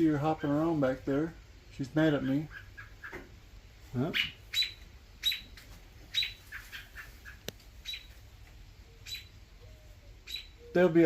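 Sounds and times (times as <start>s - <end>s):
bird alarm calls: 2.1s - 3.3s, 4.0s - 8.2s, 8.8s - 11.0s.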